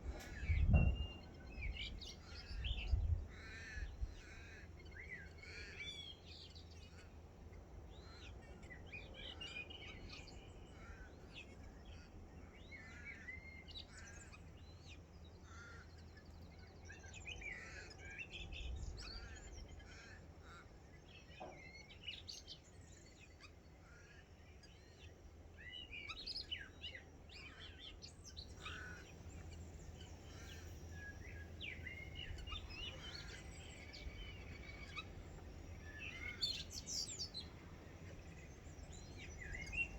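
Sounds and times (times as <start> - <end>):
birds chirping and warbling: 0.0 - 39.9.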